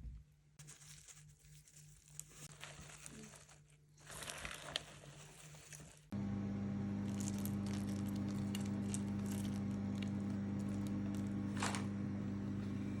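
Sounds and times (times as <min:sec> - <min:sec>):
low electrical hum: 0:06.1 - 0:13.0
small clicks and crackles: 0:07.1 - 0:11.9.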